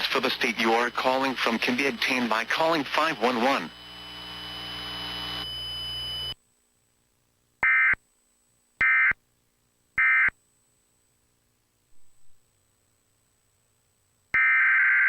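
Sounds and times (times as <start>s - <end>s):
buzzy digital data tones: 0.0s - 6.4s
steady broadcast hum: 0.0s - 14.4s.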